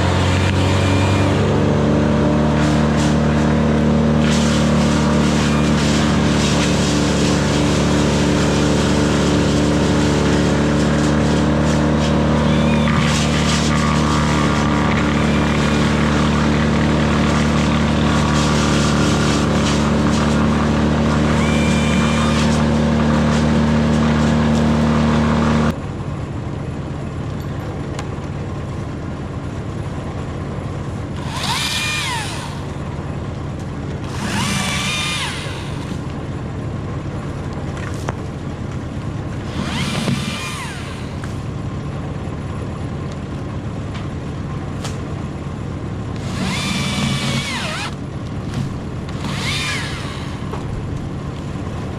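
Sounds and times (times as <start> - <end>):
steady engine hum: 0.0 - 51.9.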